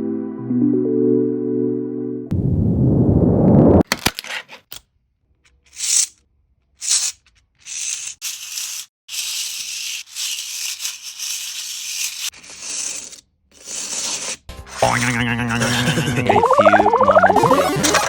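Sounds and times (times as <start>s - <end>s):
plastic pieces rattling: 6.8s - 13.2s.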